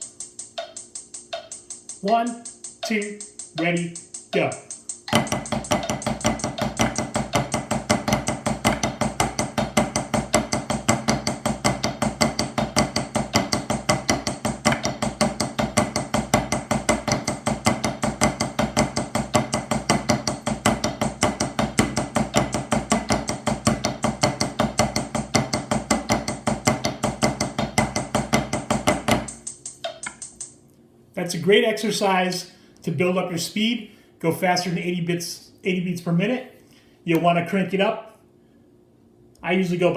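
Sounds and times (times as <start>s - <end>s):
drumsticks playing quick strikes: 0.6s - 30.6s.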